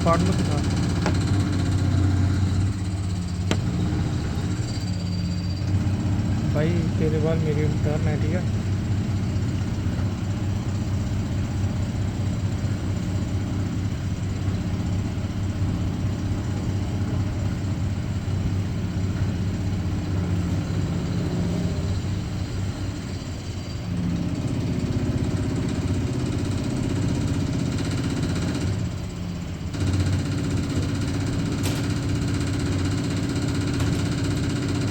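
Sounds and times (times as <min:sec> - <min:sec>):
milling machine hum: 0:00.0 - 0:14.0, 0:29.8 - 0:34.9.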